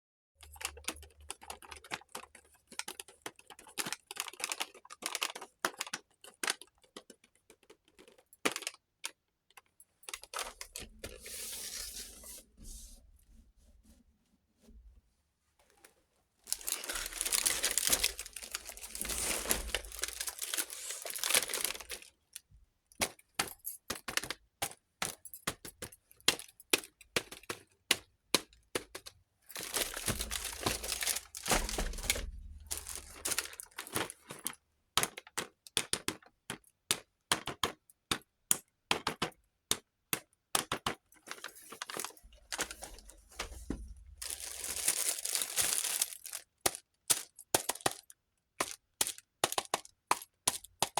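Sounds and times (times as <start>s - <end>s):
plastic packaging crinkling: 0.4s - 8.8s, 10.1s - 12.4s, 16.4s - 22.4s, 29.0s - 34.6s, 41.3s - 49.9s.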